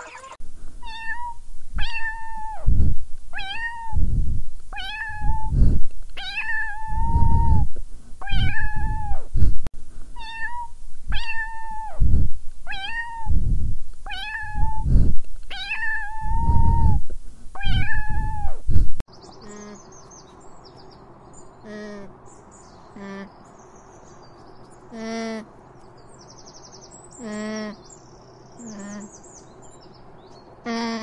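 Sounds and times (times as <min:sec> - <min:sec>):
cat meowing: 0:00.0 - 0:02.7, 0:03.3 - 0:04.0, 0:04.8 - 0:05.5, 0:06.2 - 0:09.2, 0:10.2 - 0:12.0, 0:12.7 - 0:13.4, 0:14.1 - 0:14.9, 0:15.5 - 0:17.0, 0:17.6 - 0:18.6
low rumbling noise: 0:00.4 - 0:24.2.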